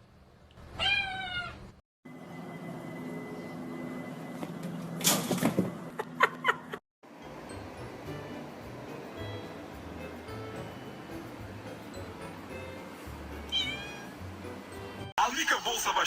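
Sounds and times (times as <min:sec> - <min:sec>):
cat meowing: 0:00.7 - 0:01.7, 0:13.5 - 0:14.1.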